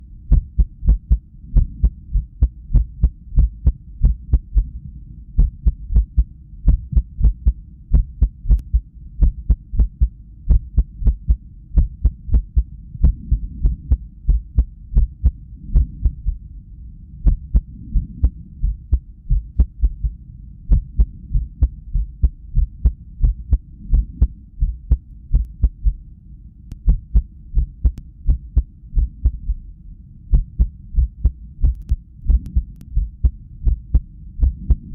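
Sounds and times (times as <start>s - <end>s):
heartbeat thumps with clicks: 0.3s - 4.8s, 5.4s - 16.4s, 17.2s - 26.0s, 26.7s - 29.6s, 30.3s - 34.9s.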